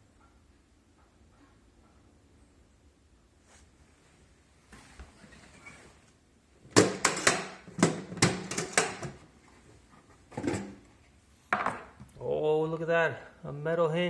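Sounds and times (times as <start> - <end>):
soft rustling: 3.4 - 6.2
plastic toolbox knocks and clacks: 6.7 - 9.2.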